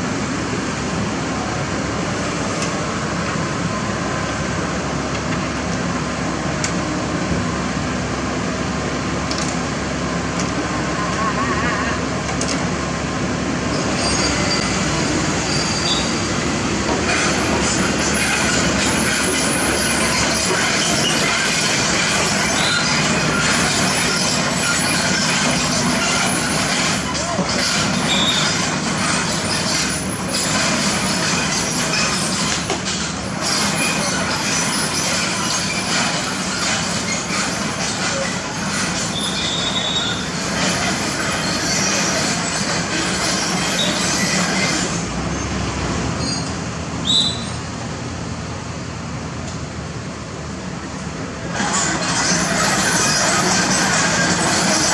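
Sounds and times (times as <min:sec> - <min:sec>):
construction machinery rumble: 0:00.0 - 0:54.9
metallic grinding and scraping: 0:13.7 - 0:45.0, 0:51.5 - 0:54.9
high metallic squeal: 0:13.7 - 0:45.6, 0:46.2 - 0:47.6, 0:51.6 - 0:54.9.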